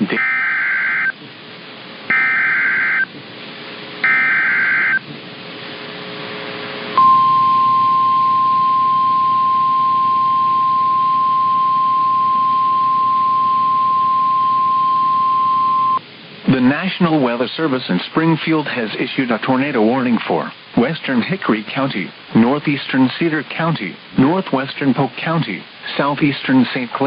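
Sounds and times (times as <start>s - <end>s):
steady warning alarm tone: 0.0s - 1.2s, 2.1s - 3.1s, 4.0s - 5.0s, 7.0s - 16.0s
radio hiss: 0.0s - 7.0s, 9.6s - 27.0s
screechy digital data bursts: 2.1s - 3.1s, 4.0s - 5.0s.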